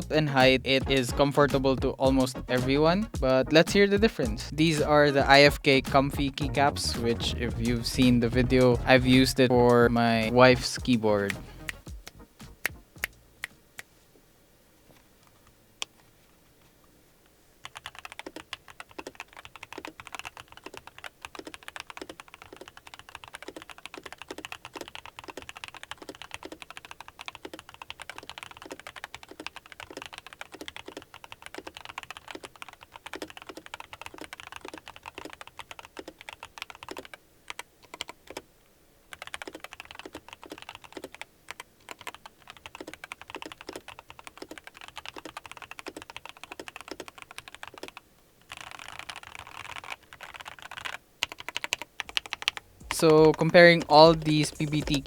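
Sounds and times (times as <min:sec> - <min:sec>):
mechanical keyboard typing: 0:17.6 - 0:38.4, 0:39.1 - 0:55.0.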